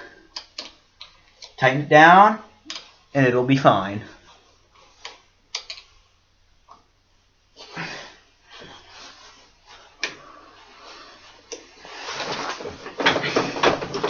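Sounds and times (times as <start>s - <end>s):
soft shuffle: 2.4s - 13.6s
rustling scrape: 8.5s - 14.0s.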